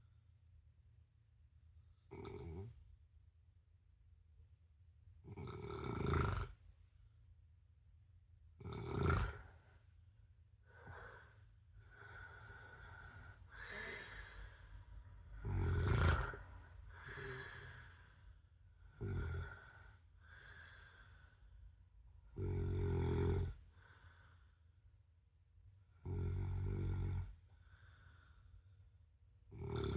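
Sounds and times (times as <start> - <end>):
man snoring: 2.1 - 2.7, 5.3 - 6.6, 8.6 - 9.5, 11.8 - 14.6, 15.4 - 18.1, 18.8 - 21.2, 22.3 - 23.6, 26.0 - 27.4, 29.5 - 29.9
soft breaths: 9.3 - 22.3, 23.5 - 25.0, 27.2 - 29.2.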